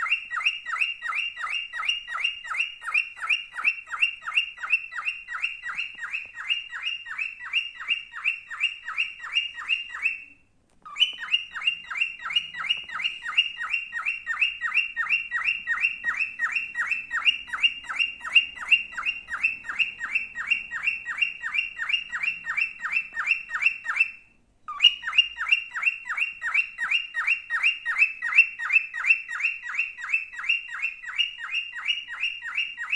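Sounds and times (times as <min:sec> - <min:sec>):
cockatiel chirping: 0:00.0 - 0:32.9.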